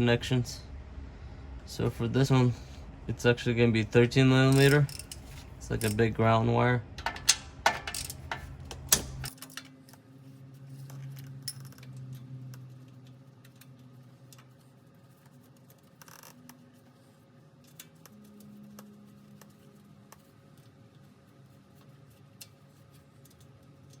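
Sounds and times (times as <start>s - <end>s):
faint low hum: 0.0s - 24.0s
wrench clicking on metal: 4.5s - 5.2s, 7.0s - 9.3s.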